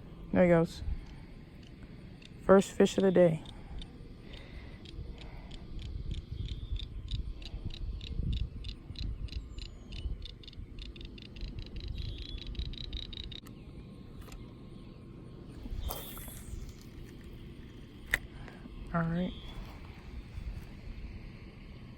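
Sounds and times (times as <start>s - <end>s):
wind rumble on microphone: 3.4s - 13.4s, 15.5s - 21.9s.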